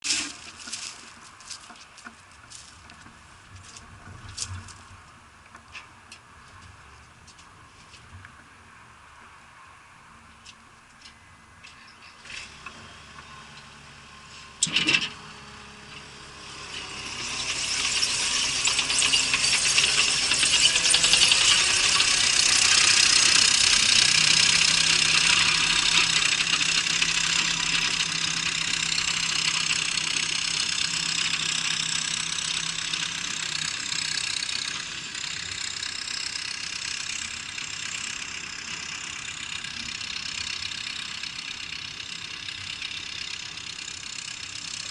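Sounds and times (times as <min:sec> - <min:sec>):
track loader engine running: 0:00.0 - 0:05.6, 0:12.2 - 0:44.9.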